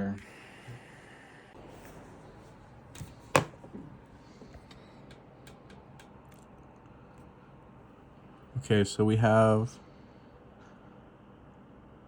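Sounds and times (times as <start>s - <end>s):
soft knocks: 3.0s - 4.6s.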